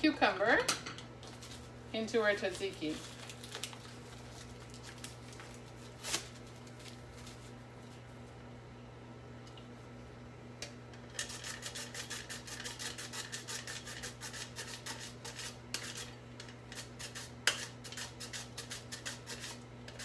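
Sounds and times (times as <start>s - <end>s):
cucumber rasping on mandoline blade: 16.8s - 20.0s.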